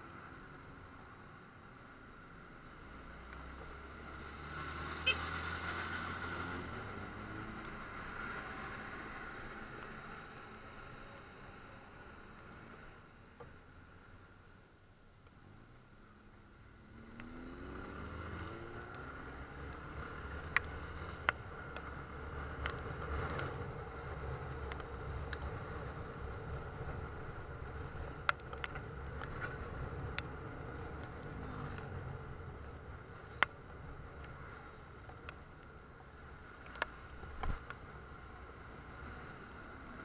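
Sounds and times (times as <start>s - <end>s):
vehicle engine pulling away: 3.8s - 9.7s, 16.8s - 21.2s.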